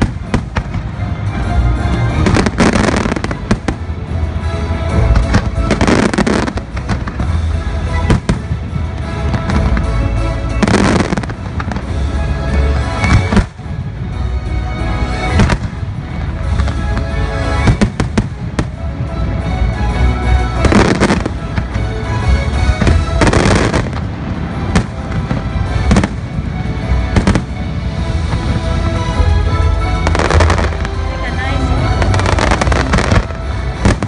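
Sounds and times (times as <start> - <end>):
fireworks bangs and booms: 0.0 - 14.1, 15.3 - 19.4, 20.5 - 31.0, 31.6 - 34.0
fireworks crackling: 0.0 - 34.0
music over loudspeakers: 0.0 - 34.0.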